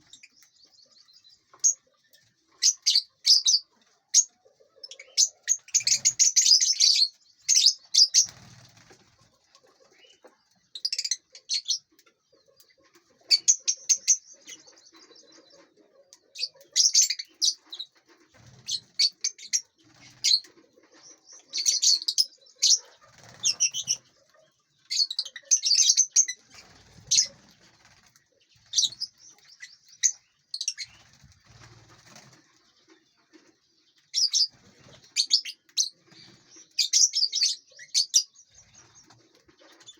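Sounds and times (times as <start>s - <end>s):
lovebirds chirping: 0.0s - 39.9s
wings flapping: 8.1s - 9.8s, 18.0s - 19.2s, 22.8s - 24.1s, 26.4s - 29.2s, 30.8s - 32.6s.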